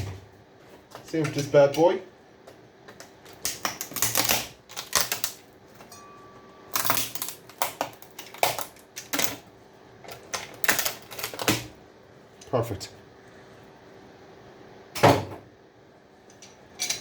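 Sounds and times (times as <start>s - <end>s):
solder joints cracking and snapping: 2.5s - 5.9s, 6.7s - 11.7s.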